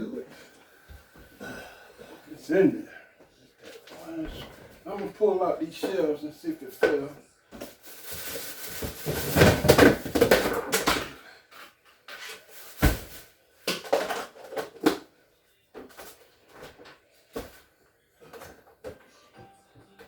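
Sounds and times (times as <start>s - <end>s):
fridge shelves rattling and scraping: 8.1s - 11.1s.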